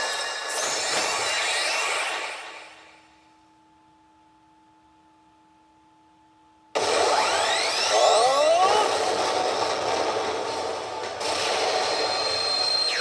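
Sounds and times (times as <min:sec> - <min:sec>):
faint steady hum: 0:02.6 - 0:06.8
pachinko machine sound effects: 0:06.8 - 0:13.0.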